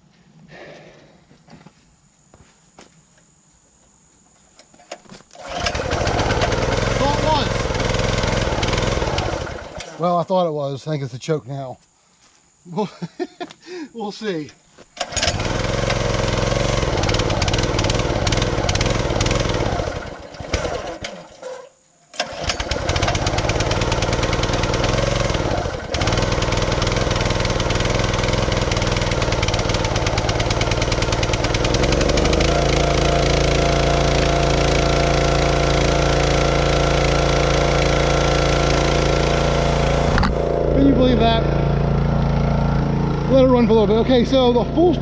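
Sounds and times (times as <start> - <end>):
small gas engine starting and running: 4.9 - 10.2, 15.0 - 45.0.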